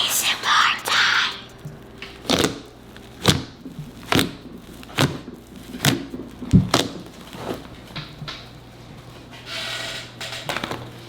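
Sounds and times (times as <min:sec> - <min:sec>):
slime popping and squelching: 0:00.5 - 0:08.5.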